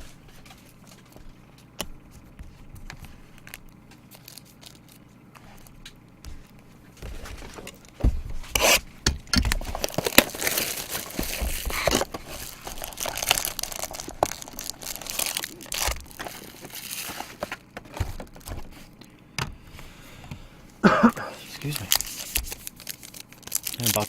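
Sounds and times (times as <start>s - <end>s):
wrapping tearing and crinkling: 2.2s - 6.0s, 9.4s - 19.0s, 21.4s - 24.0s.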